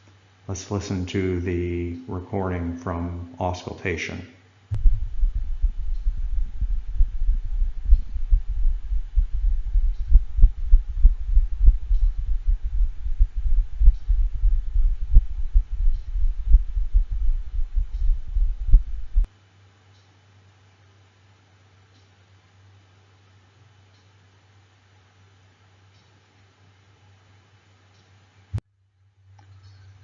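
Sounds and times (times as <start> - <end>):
fast irregular heartbeats: 4.7 - 19.3.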